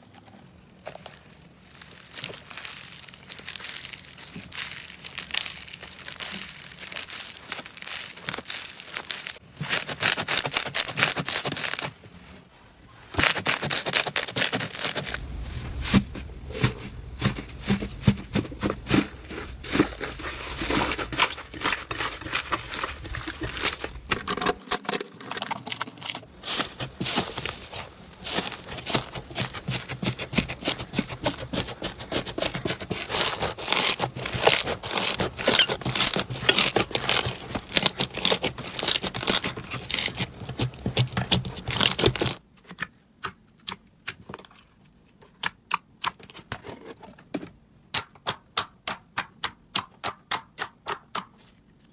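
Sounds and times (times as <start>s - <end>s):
crunchy slime crackling and popping: 0.8s - 11.9s, 13.2s - 42.4s.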